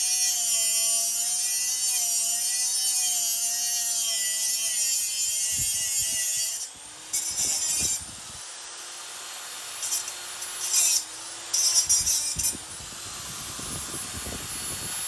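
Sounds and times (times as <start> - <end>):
scraping on metal: 4.8 - 8.0.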